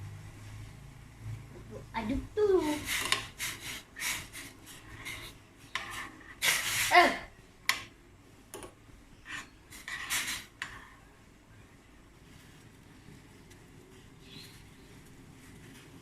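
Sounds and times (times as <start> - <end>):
spoon scraping vessel: 2.8 - 6.9, 9.3 - 10.5.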